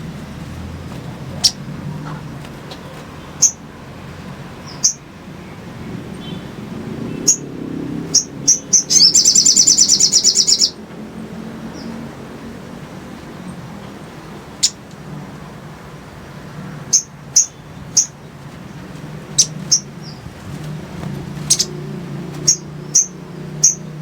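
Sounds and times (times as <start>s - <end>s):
bird trill: 3.3s - 3.6s, 4.6s - 5.1s, 7.1s - 10.8s, 14.6s - 14.8s, 16.9s - 18.3s, 19.3s - 20.2s, 21.3s - 24.0s
bird chips: 8.1s - 10.8s, 16.9s - 23.9s.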